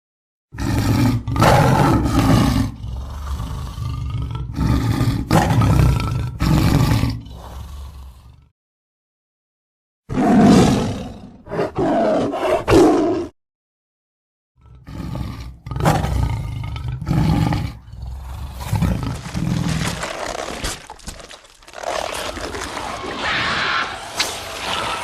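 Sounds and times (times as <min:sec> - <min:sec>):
monster roaring: 0:00.6 - 0:08.5, 0:14.7 - 0:25.0.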